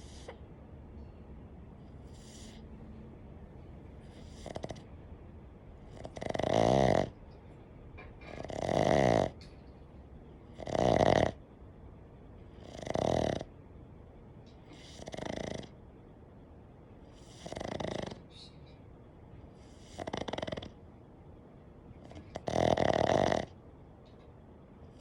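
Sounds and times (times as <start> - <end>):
dog snoring: 0.0 - 0.4, 1.8 - 2.7, 4.0 - 4.9, 5.8 - 7.2, 8.2 - 9.5, 10.4 - 11.5, 12.5 - 13.6, 14.6 - 15.8, 17.0 - 18.3, 19.4 - 20.9, 22.0 - 23.6.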